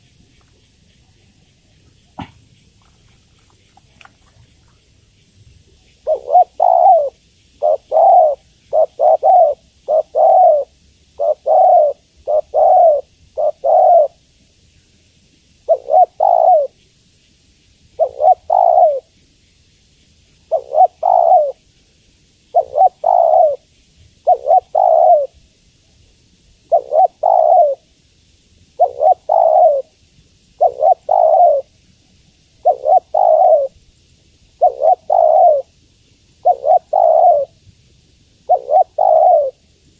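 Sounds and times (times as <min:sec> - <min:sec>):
dove cooing: 0:00.0 - 0:14.2, 0:15.7 - 0:16.8, 0:18.0 - 0:19.1, 0:20.5 - 0:21.6, 0:22.5 - 0:25.4, 0:26.7 - 0:27.9, 0:28.8 - 0:29.9, 0:30.6 - 0:31.7, 0:32.6 - 0:33.8, 0:34.6 - 0:35.8, 0:36.4 - 0:37.6, 0:38.4 - 0:39.7.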